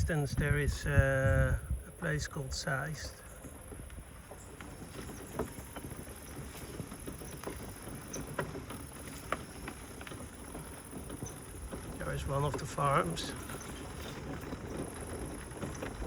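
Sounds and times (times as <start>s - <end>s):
mobility scooter motor and tyres: 0.0s - 16.0s
light clicks and rattles: 2.6s - 16.0s.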